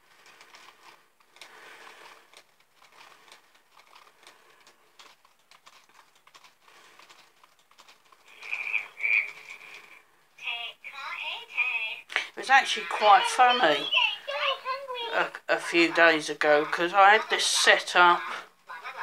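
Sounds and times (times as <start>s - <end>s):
faint clicking and rustling: 0.0s - 10.3s
toy electronic voices chirping: 8.3s - 11.5s.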